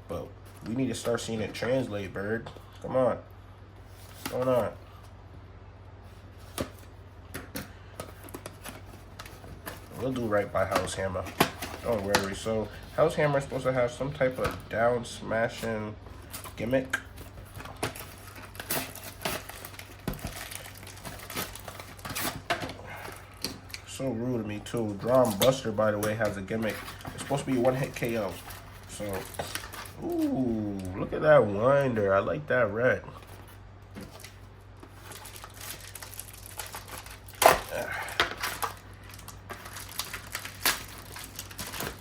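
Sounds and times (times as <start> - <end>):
plastic packaging rustling: 7.7 - 14.8, 15.4 - 30.9, 33.2 - 42.0
toy packaging crinkling: 17.7 - 22.4, 34.9 - 42.0.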